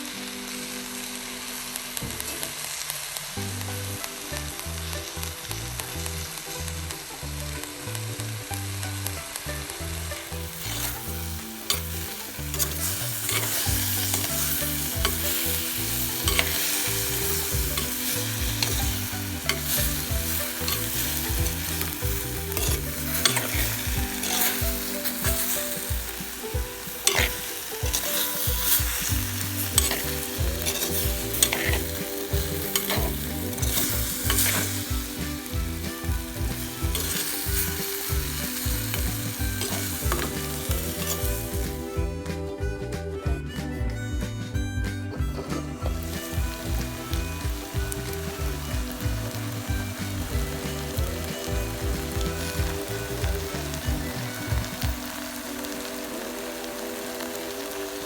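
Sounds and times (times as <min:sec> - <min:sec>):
chicken sizzling in a frying pan: 0:09.8 - 0:41.9, 0:45.5 - 0:58.0
spatula scraping and knocking pan: 0:10.2 - 0:41.9.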